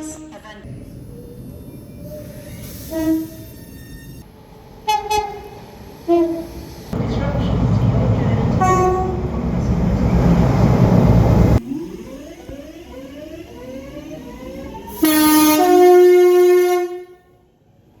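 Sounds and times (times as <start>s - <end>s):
train rumble: 0.0s - 11.6s
rising whine of train: 0.0s - 18.0s
train horn: 2.9s - 3.5s, 4.8s - 9.9s, 14.9s - 17.5s.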